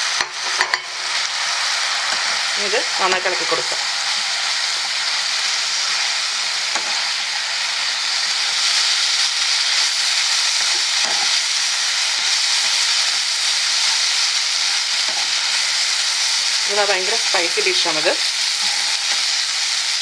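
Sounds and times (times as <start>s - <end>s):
chicken sizzling in oil: 0.0s - 20.0s
spoon scraping and knocking pan: 0.2s - 0.9s, 6.7s - 7.1s, 10.6s - 11.4s, 15.0s - 15.4s.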